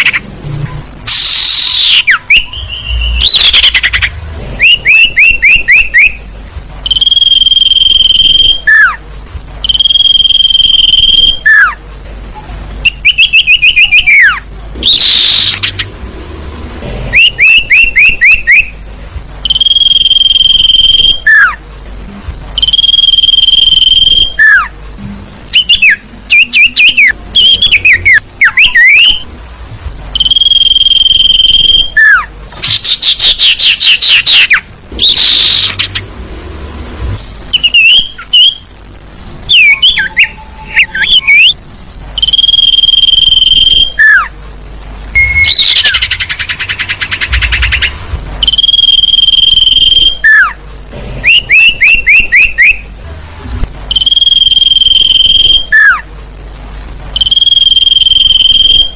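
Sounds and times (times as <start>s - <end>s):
long high bird whistles: 1.1s - 6.2s, 6.9s - 9.0s, 12.8s - 15.8s, 17.1s - 18.8s, 19.4s - 21.6s, 22.6s - 24.7s, 25.5s - 29.2s, 30.2s - 35.9s, 42.2s - 44.3s, 45.2s - 46.6s, 51.3s - 52.9s, 53.9s - 56.0s
fast bird chirping notes: 1.1s - 9.0s, 12.8s - 16.0s, 17.1s - 21.6s, 25.5s - 29.3s, 30.1s - 36.2s, 37.2s - 38.7s, 45.2s - 50.6s, 51.2s - 53.1s.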